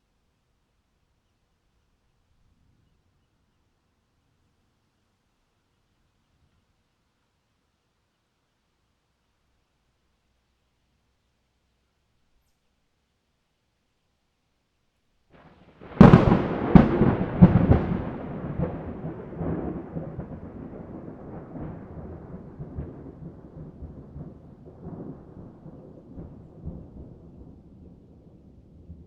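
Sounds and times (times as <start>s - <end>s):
thunder crack and rumble: 15.7s - 29.0s.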